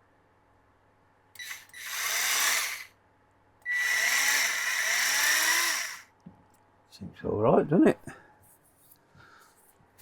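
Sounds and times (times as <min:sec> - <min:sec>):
electric carving knife running: 0:01.4 - 0:02.9, 0:03.7 - 0:06.0.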